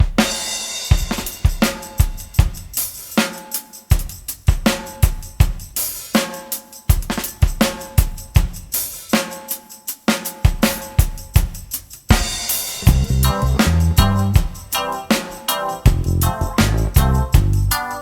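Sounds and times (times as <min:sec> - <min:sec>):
reggae instrumental music: 0:12.8 - 0:18.0.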